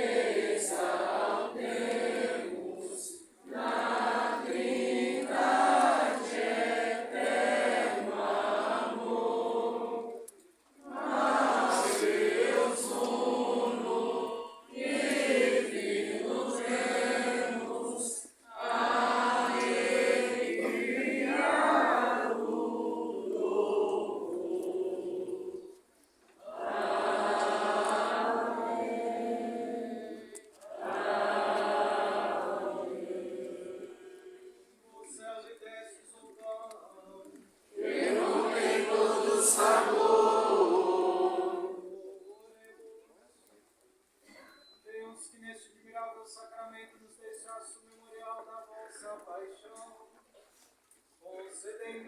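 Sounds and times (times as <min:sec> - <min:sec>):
choir singing a hymn: 0:00.0 - 0:25.8, 0:26.4 - 0:34.8, 0:37.7 - 0:42.2.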